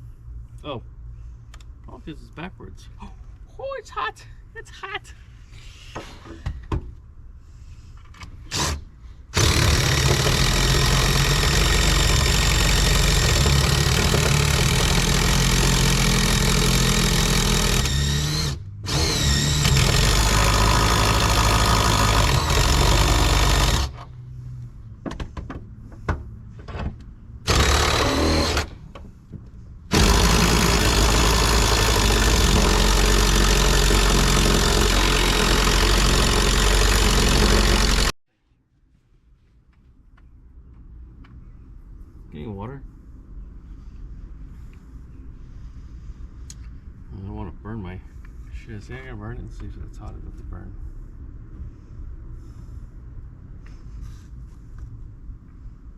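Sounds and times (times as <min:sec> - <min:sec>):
power drill cutting sheet metal: 0:09.4 - 0:24.1, 0:27.5 - 0:28.8, 0:29.9 - 0:38.2.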